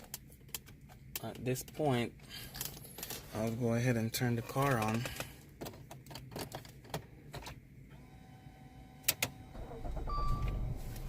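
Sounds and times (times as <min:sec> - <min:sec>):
ignition clicks: 0:09.0 - 0:11.0
car engine rumbling: 0:09.4 - 0:11.0
short electronic beep: 0:09.8 - 0:11.0.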